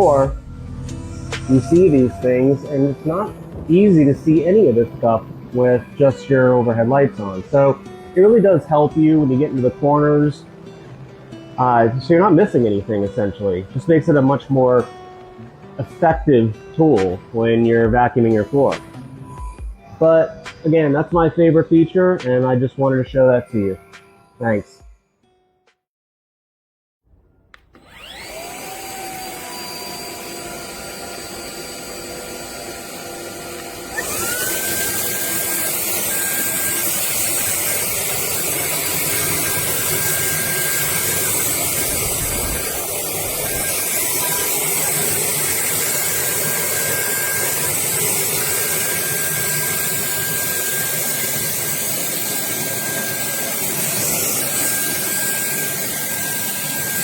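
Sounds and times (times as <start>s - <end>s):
vacuum motor whine: 0.0s - 16.7s, 27.5s - 57.0s
suction air rushing: 39.1s - 57.0s.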